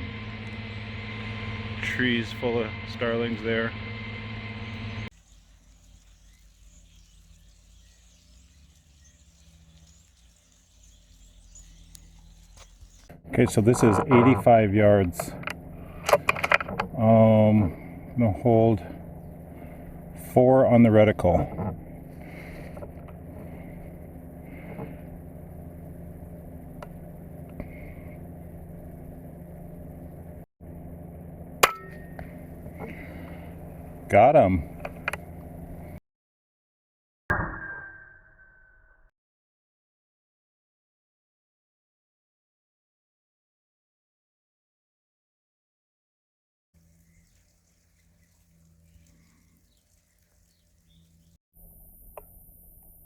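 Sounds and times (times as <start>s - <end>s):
low steady hum: 0.0s - 36.0s, 46.8s - 53.0s
small birds chirping: 5.1s - 13.6s, 17.0s - 29.2s, 32.2s - 36.0s, 46.8s - 53.0s.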